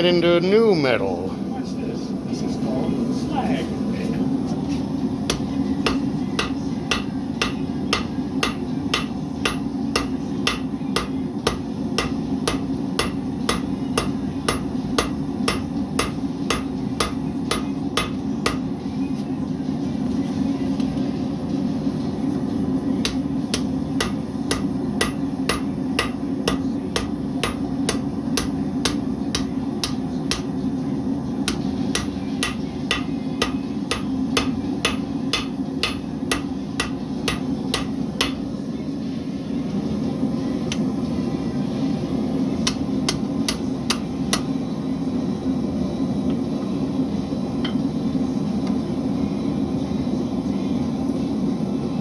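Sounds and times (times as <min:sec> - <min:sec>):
hammer ringing on anvil: 0:05.3 - 0:18.7, 0:23.0 - 0:30.6, 0:31.5 - 0:38.4.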